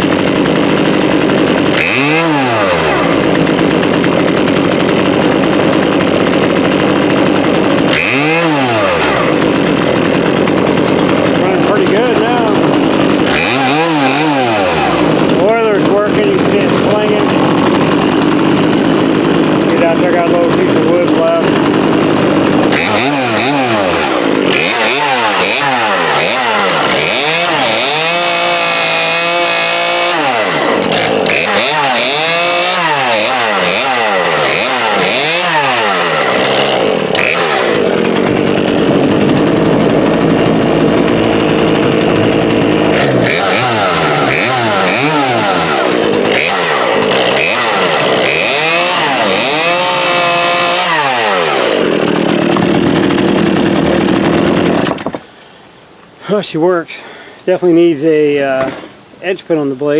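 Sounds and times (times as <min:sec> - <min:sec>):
chainsaw revving: 0:00.0 - 0:55.3, 0:58.3 - 0:59.2.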